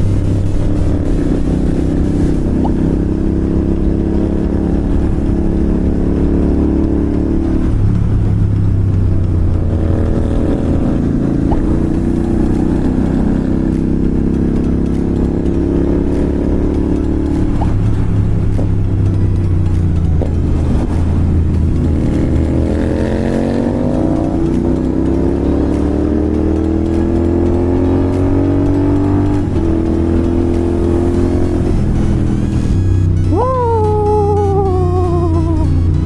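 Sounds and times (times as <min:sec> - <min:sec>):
motorcycle engine running: 0:00.0 - 0:36.0.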